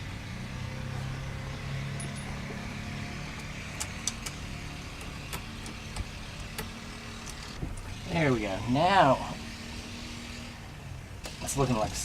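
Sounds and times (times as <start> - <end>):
sharp clicks of steering parts: 3.3 - 8.0.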